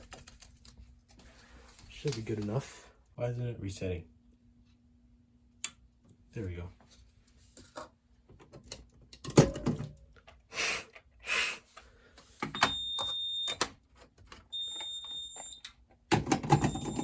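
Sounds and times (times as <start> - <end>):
high-pitched fire alarm beep: 12.6 - 13.6, 14.5 - 15.7, 16.5 - 17.0.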